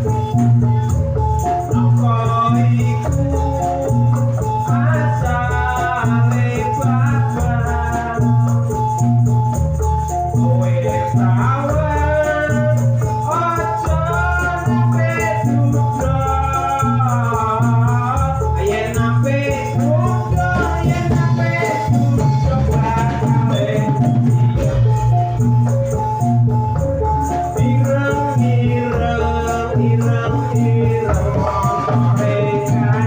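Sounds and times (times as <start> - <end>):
gamelan ensemble over loudspeakers: 0.0 - 33.0
heavy repeating drum beat: 0.0 - 33.0
person singing wavering melody: 0.0 - 33.0
steady metallic notes: 18.2 - 33.0.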